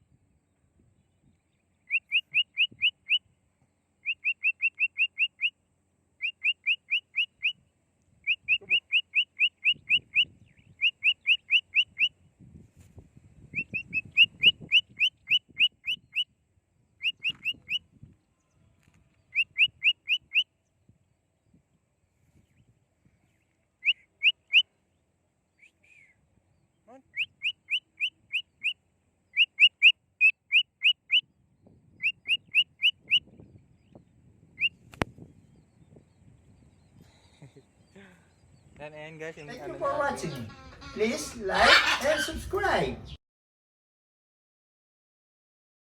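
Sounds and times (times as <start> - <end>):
cockatiel chirping: 1.9 - 3.2, 4.0 - 5.5, 6.2 - 7.6, 8.3 - 12.1, 17.0 - 17.8, 19.3 - 20.4, 27.1 - 31.2, 32.0 - 33.3, 40.4 - 43.2.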